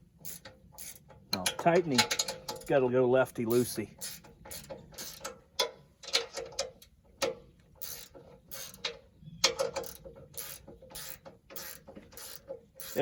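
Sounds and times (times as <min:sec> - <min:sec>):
ratchet wrench clicking: 0:00.2 - 0:02.6, 0:03.5 - 0:05.3, 0:07.8 - 0:13.0.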